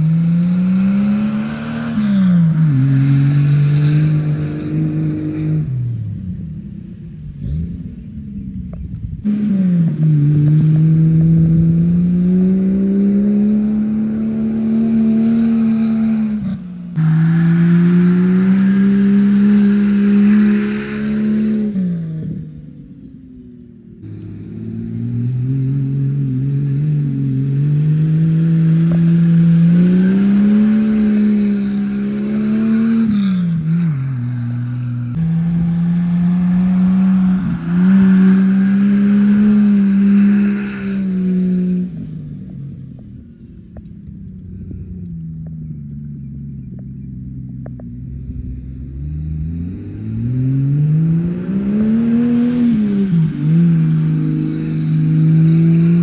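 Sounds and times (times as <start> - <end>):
engine revving hard: 9.3 - 22.0, 24.0 - 42.0, 49.0 - 56.0.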